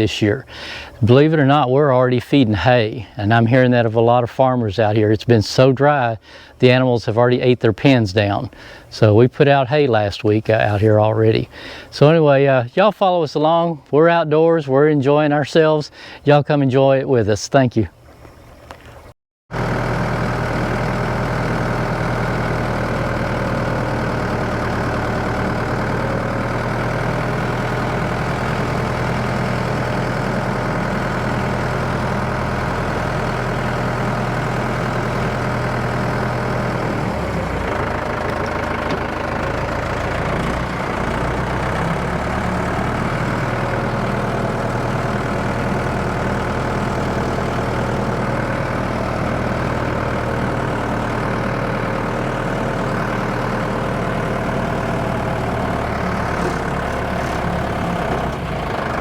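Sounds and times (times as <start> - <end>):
tractor engine idling: 0.0 - 12.7, 19.5 - 59.0.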